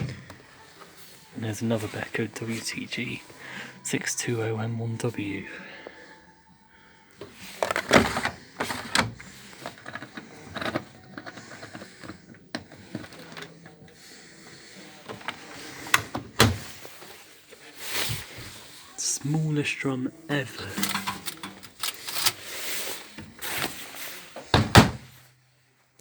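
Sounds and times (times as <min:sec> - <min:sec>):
washing machine door clicks and knocks: 0:16.0 - 0:16.6, 0:24.5 - 0:25.0.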